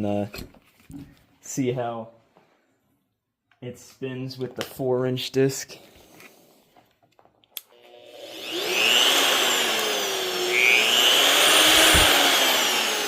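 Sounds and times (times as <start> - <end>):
cut-off tool high whine: 7.7 - 13.0.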